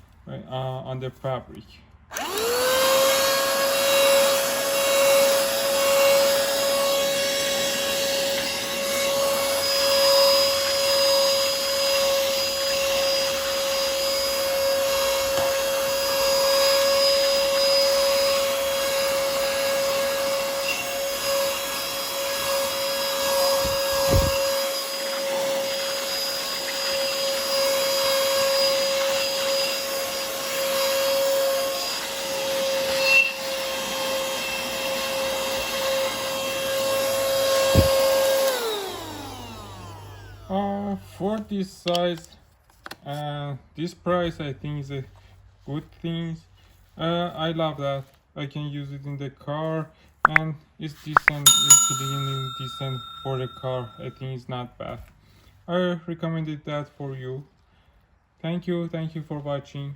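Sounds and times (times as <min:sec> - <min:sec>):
handheld vacuum motor whine: 0:02.2 - 0:40.6.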